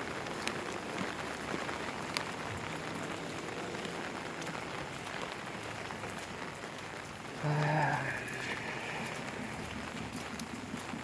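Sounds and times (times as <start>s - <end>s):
steady rain falling: 0.0s - 11.0s.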